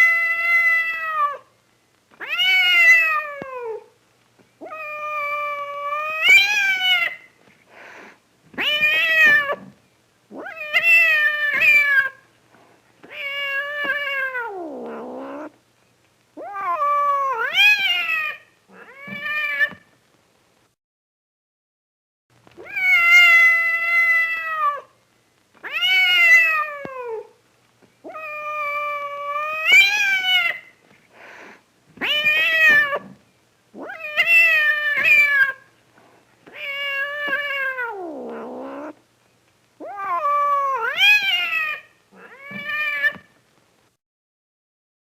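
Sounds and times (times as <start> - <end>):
cat howling: 0.0 - 1.5, 2.2 - 3.9, 4.6 - 7.2, 8.6 - 9.7, 10.3 - 12.2, 13.1 - 15.5, 16.4 - 19.8, 22.6 - 24.9, 25.6 - 27.4, 28.0 - 30.6, 32.0 - 33.2, 33.8 - 35.7, 36.5 - 39.0, 39.8 - 43.2.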